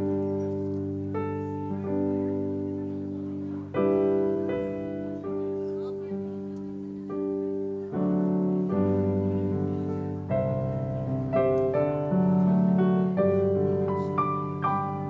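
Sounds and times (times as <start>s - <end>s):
piano playing sustained chords: 0.0s - 15.0s.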